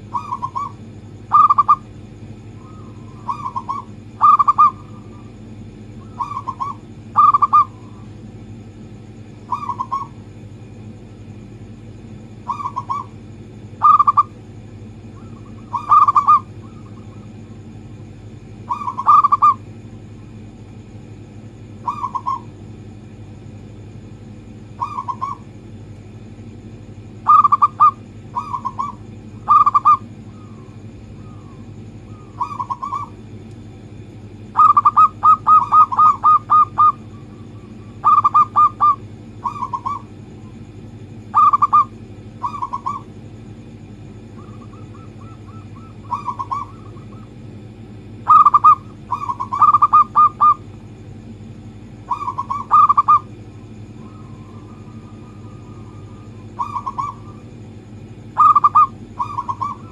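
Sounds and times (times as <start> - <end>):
dove cooing: 0.0 - 8.1, 9.4 - 10.2, 12.4 - 14.4, 15.0 - 19.7, 21.7 - 22.6, 24.7 - 25.6, 27.1 - 33.3, 34.5 - 40.6, 41.3 - 43.2, 44.2 - 47.4, 48.1 - 50.7, 52.0 - 59.9
steady low hum: 0.0 - 59.9.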